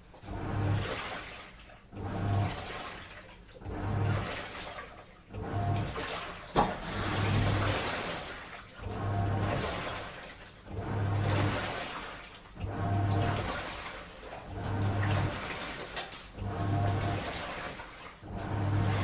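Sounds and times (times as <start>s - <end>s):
washing machine drum sloshing: 0.0s - 19.0s
low motor hum: 8.8s - 9.9s, 10.7s - 11.7s, 12.6s - 13.6s, 14.5s - 15.6s, 16.4s - 17.3s, 18.2s - 19.0s.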